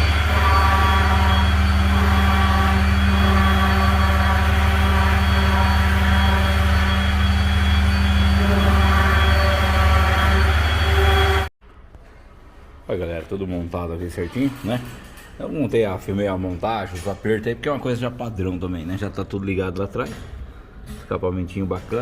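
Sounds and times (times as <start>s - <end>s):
motor droning: 0.0s - 11.5s.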